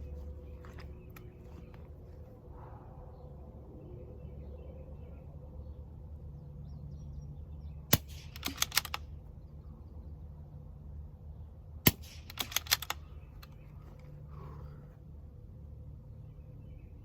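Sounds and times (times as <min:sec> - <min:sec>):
low wind rumble: 0:00.0 - 0:17.0
rifle shot: 0:07.9 - 0:09.1, 0:11.8 - 0:13.1
rifle bolt clicking: 0:08.2 - 0:09.1, 0:12.0 - 0:13.6.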